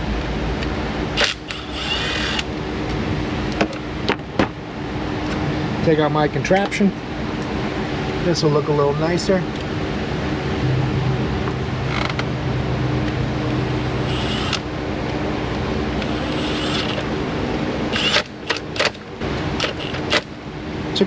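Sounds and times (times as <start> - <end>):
creaks: 11.5 - 14.6
sharp plastic clicks: 18.0 - 19.0.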